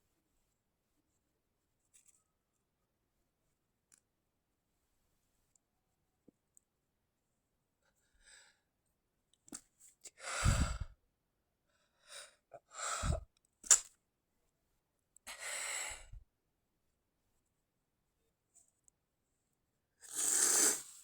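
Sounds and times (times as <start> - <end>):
soft breaths: 10.1 - 11.0.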